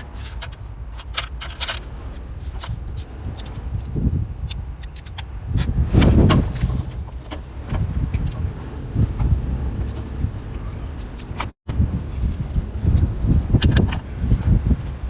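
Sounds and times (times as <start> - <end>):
metal tools clicking and clinking: 0.0 - 3.9, 4.5 - 5.3
steady low rumble: 0.0 - 15.0.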